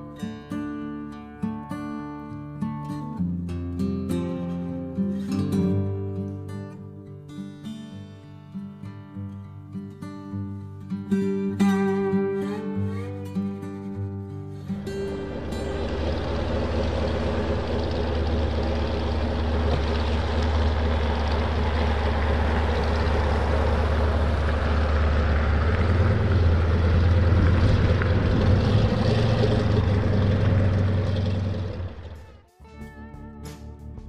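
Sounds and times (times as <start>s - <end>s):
propeller aircraft engine drone: 14.7s - 32.4s.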